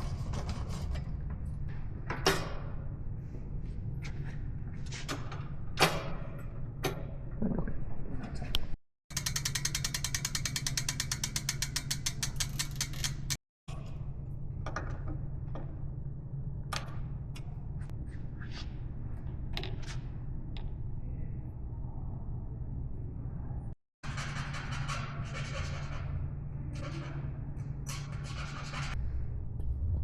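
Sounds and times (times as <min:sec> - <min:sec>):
fast ratchet clicking: 0:09.1 - 0:13.4.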